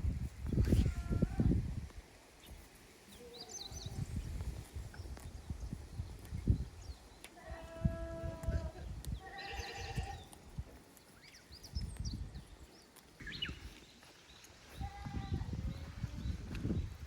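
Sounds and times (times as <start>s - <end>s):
wind rumble on microphone: 0.0s - 2.6s, 3.6s - 10.8s, 11.5s - 13.7s, 14.6s - 17.0s
small birds chirping: 2.3s - 17.0s
goats bleating: 7.4s - 10.2s.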